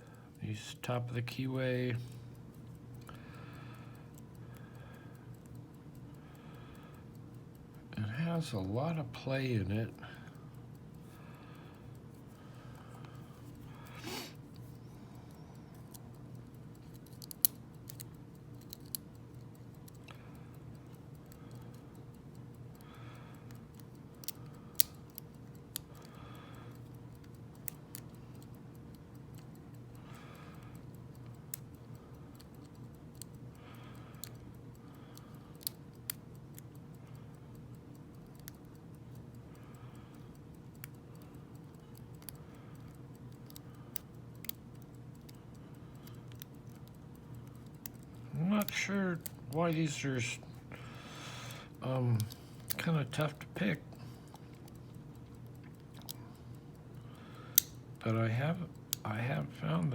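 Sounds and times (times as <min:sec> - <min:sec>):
steady low hum: 0:00.0 - 0:59.9
lock pick metallic clicks: 0:15.8 - 0:20.1, 0:23.5 - 0:25.9, 0:35.2 - 0:36.9, 0:46.0 - 0:49.5, 0:57.4 - 0:57.8.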